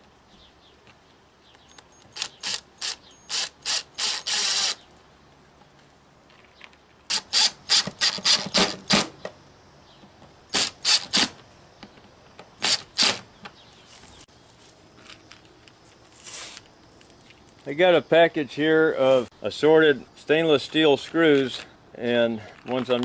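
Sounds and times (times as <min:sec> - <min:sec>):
ratcheting hand tool rasping: 0:02.2 - 0:04.8, 0:07.1 - 0:09.0, 0:12.6 - 0:13.2.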